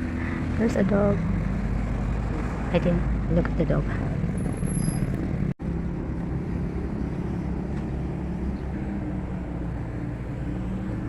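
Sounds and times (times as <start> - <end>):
faint engine hum: 0.0 - 11.0
low outdoor rumble: 0.0 - 11.0.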